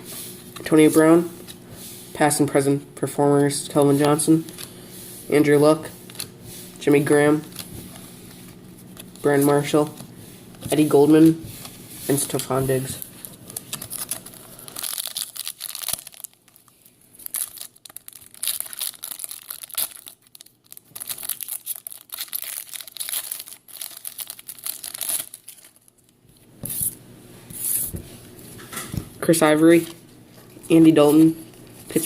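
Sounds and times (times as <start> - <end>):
wrapper tearing and crinkling: 12.2 - 26.9.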